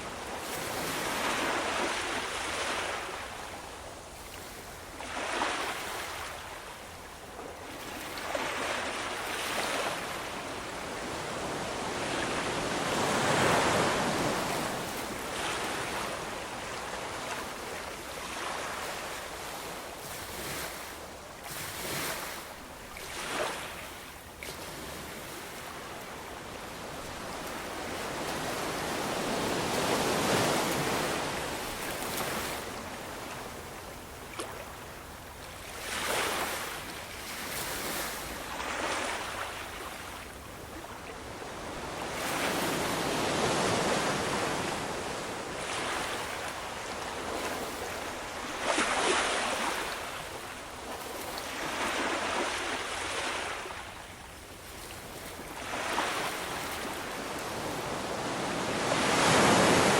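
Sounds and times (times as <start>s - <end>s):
ocean waves breaking: 7.8s - 17.6s, 20.1s - 33.6s, 41.6s - 54.0s, 55.2s - 59.9s.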